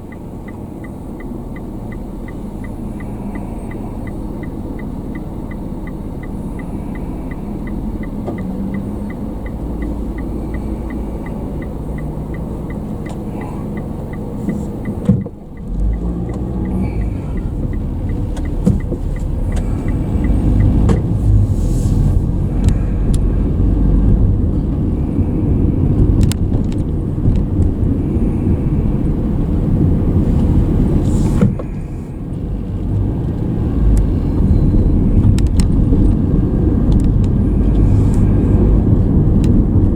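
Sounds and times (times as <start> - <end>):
fast regular ticking: 0.0 - 21.4
car engine and road rumble: 0.0 - 39.9.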